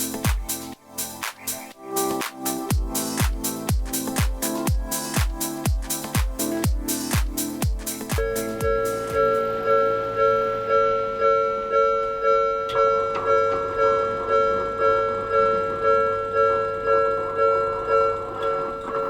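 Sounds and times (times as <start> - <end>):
level crossing warning bell: 8.2 - 19.0.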